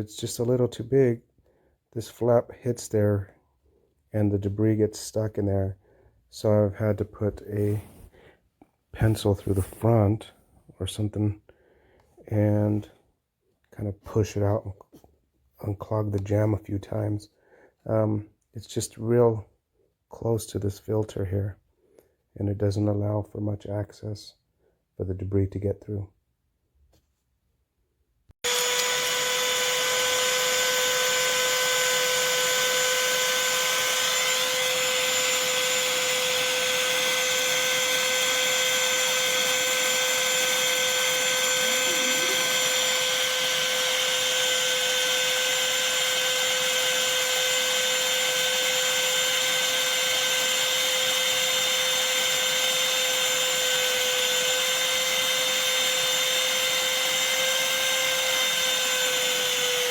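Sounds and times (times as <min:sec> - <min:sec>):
handheld vacuum motor whine: 0:28.4 - 0:59.9.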